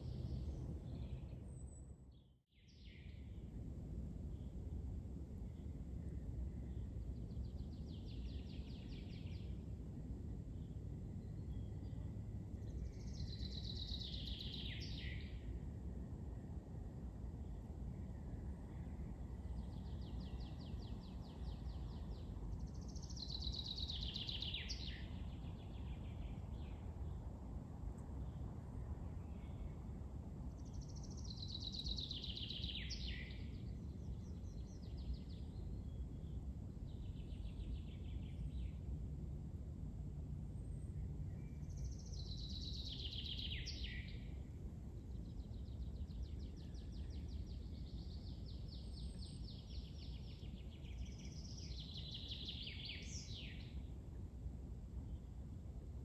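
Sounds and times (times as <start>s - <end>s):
songbird singing: 0.0s - 3.4s, 5.5s - 9.6s, 10.5s - 15.6s, 17.4s - 27.3s, 28.1s - 38.9s, 40.6s - 54.0s
steady low rumble: 24.5s - 52.5s.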